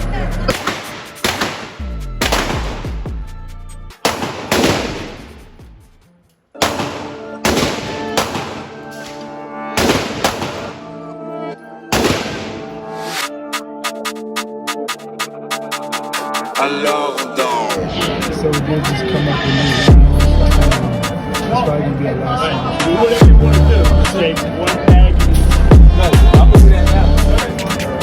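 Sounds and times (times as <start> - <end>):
background music: 0.0 - 28.0
gunshots echoing: 0.5 - 3.0, 4.0 - 5.6, 6.6 - 11.1, 11.9 - 13.1.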